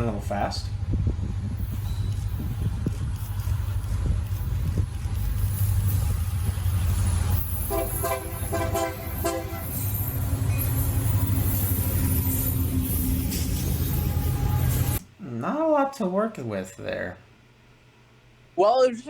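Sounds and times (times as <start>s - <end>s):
freight train rumbling: 0.0s - 15.0s
train air horn: 7.6s - 10.1s.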